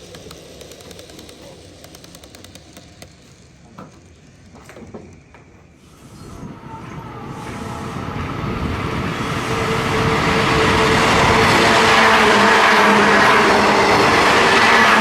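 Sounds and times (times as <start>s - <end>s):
motor hum: 0.0s - 6.0s
model train wheels rolling: 0.0s - 7.6s.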